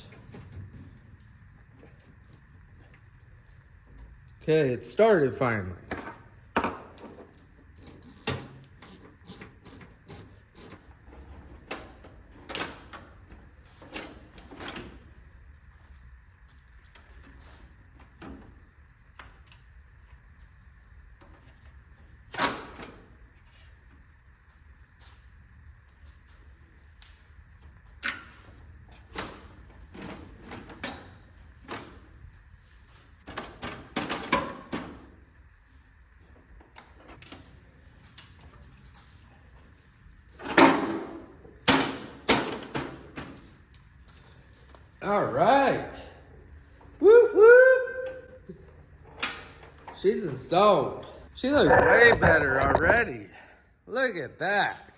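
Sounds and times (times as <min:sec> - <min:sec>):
knocks and clunks of parts: 0:51.6 - 0:53.1.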